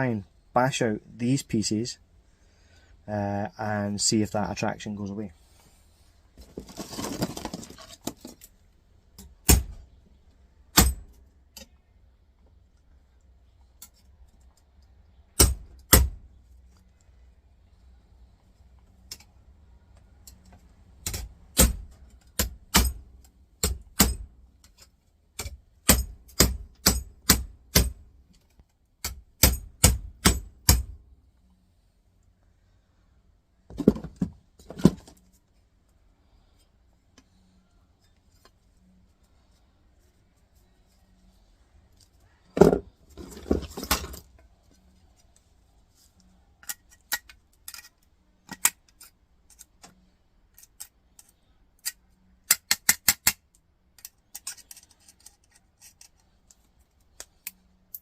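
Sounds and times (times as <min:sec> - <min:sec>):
hammer striking metal plate: 0:25.4 - 0:27.9, 0:29.0 - 0:30.9.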